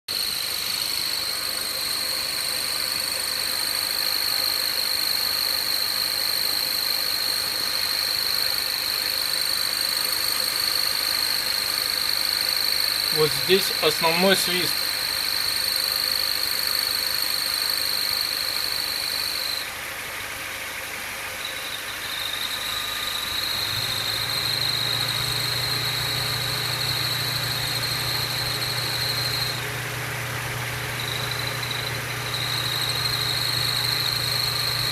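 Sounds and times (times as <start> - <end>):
high-pitched whistle from car: 21.4 - 29.6.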